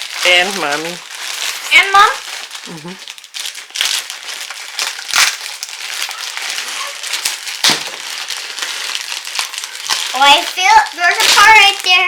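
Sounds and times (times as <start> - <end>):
plastic bag crinkling: 0.0 - 12.0
sharp plastic crackles: 0.0 - 12.0.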